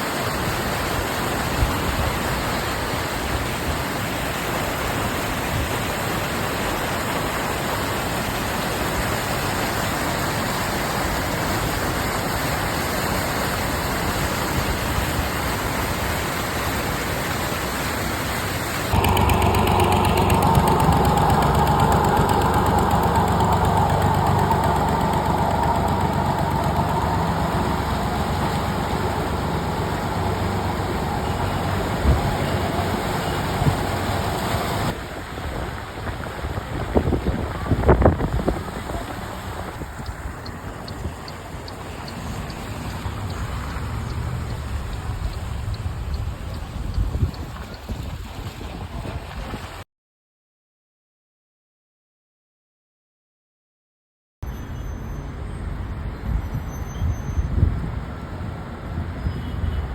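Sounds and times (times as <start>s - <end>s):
heavy rain: 0.0s - 46.8s
running floodwater: 0.0s - 49.8s
vehicle engine hum: 18.8s - 35.0s, 36.2s - 47.9s.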